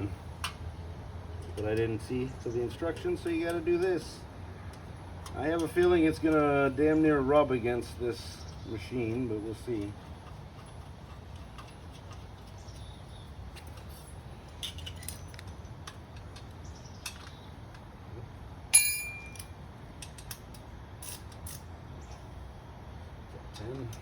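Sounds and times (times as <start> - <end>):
metal tools clicking and clinking: 5.2 - 6.7, 7.4 - 17.8, 18.7 - 21.7
sharp ringing metal clink: 18.7 - 19.6.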